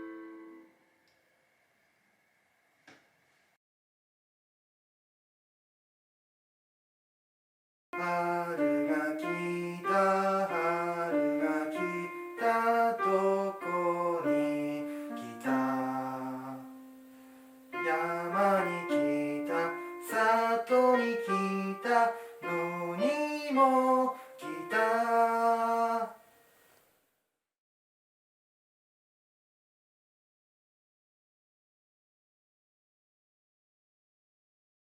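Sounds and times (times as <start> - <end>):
electronic keyboard melody: 0.0 - 0.8, 8.0 - 26.1.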